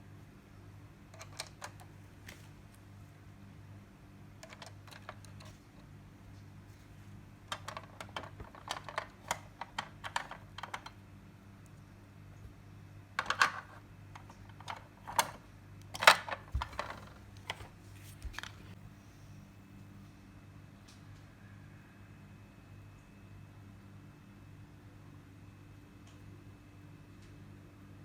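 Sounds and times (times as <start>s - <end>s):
plastic toy parts clicking: 1.2s - 1.9s, 4.4s - 5.6s, 7.5s - 11.0s, 13.2s - 17.2s.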